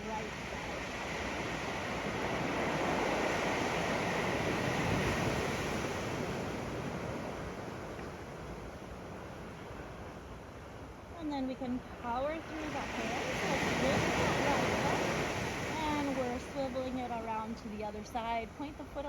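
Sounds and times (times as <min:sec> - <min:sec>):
ocean waves washing on sand: 0:00.0 - 0:19.0.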